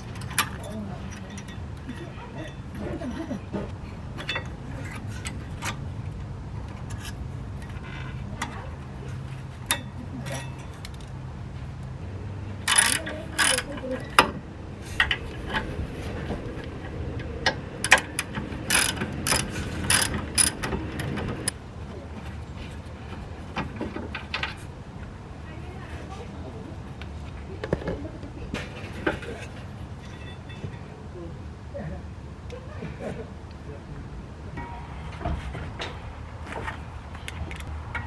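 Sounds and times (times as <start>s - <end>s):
ratchet wrench clicking: 12.6s - 13.8s, 17.8s - 21.1s.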